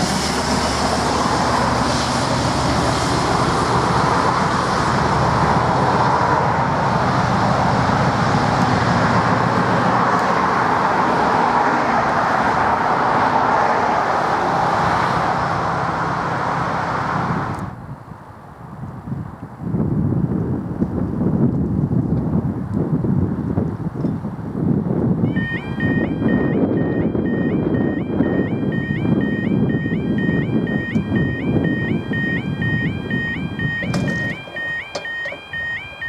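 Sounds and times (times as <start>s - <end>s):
diesel locomotive engines running: 0.0s - 17.8s, 25.2s - 36.0s.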